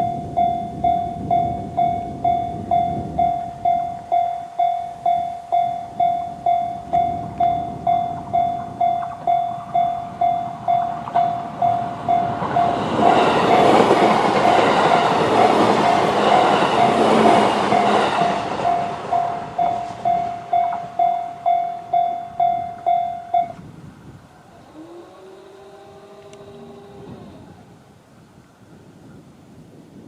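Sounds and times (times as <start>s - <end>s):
railway crossing bell ringing: 0.0s - 23.7s
train wheels clattering: 6.0s - 23.6s.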